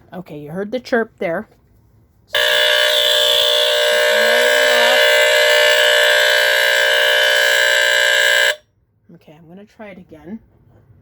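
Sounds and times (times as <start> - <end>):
buzzy alarm horn: 2.3 - 8.6.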